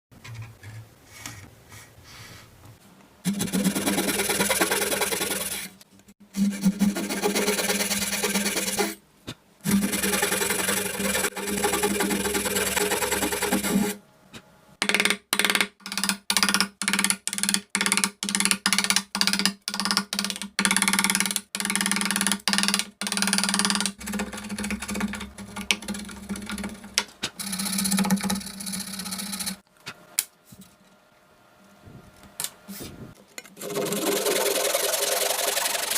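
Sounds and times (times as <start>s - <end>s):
tool working wood: 3.3s - 9.0s, 9.7s - 14.0s, 14.8s - 29.6s, 33.6s - 35.9s.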